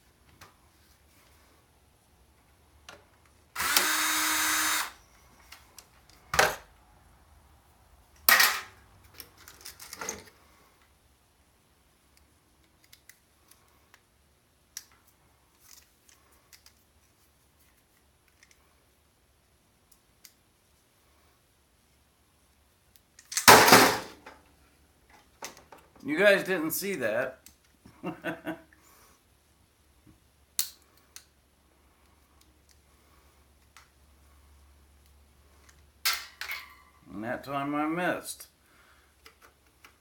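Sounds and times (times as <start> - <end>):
small power tool running: 3.6 - 5.0
clatter and handling clicks: 15.6 - 16.8.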